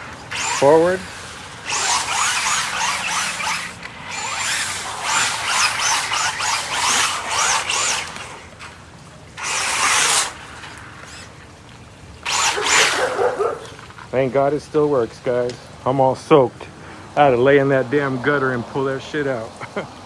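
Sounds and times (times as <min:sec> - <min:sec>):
electric motor whining: 0:00.0 - 0:11.5, 0:12.2 - 0:14.0.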